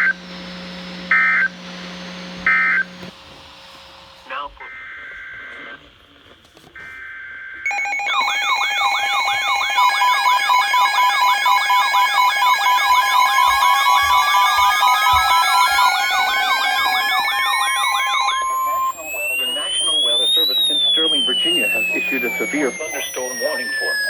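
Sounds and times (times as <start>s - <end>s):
electronic alarms sounding: 0.0s - 3.2s, 6.8s - 24.0s
steady alert tone: 7.7s - 24.0s
warbling alert data bursts: 7.7s - 24.0s.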